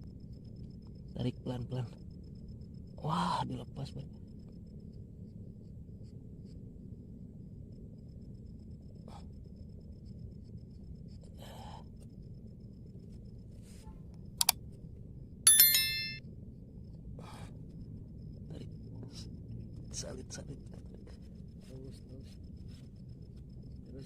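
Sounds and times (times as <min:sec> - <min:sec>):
low background hum: 0:00.0 - 0:24.0
bell-like ding: 0:15.5 - 0:16.2.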